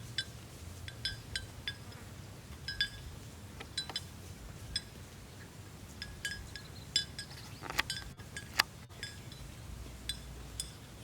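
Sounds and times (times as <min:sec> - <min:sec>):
cow bells clinking: 0:00.0 - 0:11.0.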